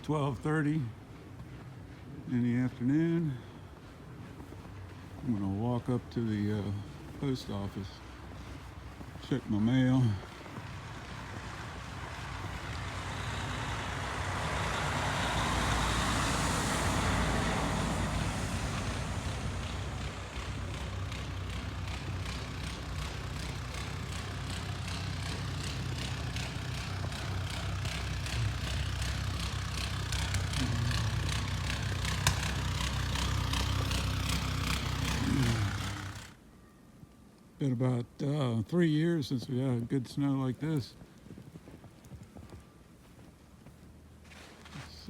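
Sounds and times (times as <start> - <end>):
vehicle passing on road: 0.0 - 36.4
footsteps crunching through snow: 1.0 - 13.8, 40.1 - 45.0.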